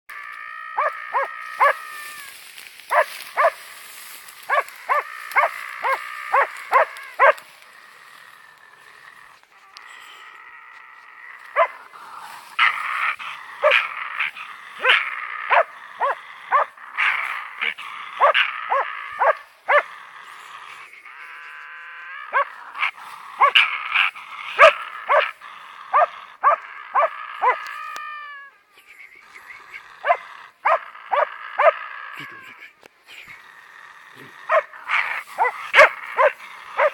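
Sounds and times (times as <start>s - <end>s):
dog barking in high yelps: 0.8s - 1.8s, 2.9s - 3.6s, 4.5s - 7.5s, 11.6s - 11.8s, 12.6s - 19.9s, 22.3s - 25.3s, 25.9s - 27.8s, 30.0s - 31.8s, 34.5s - 36.9s
dog whining: 0.8s - 1.8s, 4.5s - 7.4s, 14.8s - 17.1s, 25.9s - 27.8s, 34.5s - 36.9s.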